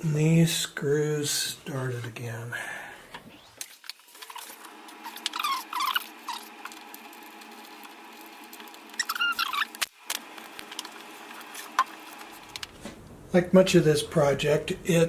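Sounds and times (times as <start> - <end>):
screws squeaking under screwdriver: 5.0 - 6.5, 8.9 - 9.9.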